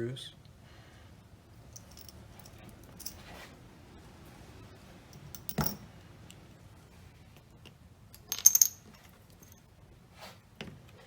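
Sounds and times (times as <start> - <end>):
small metal parts clattering: 1.8 - 3.2, 8.2 - 9.6.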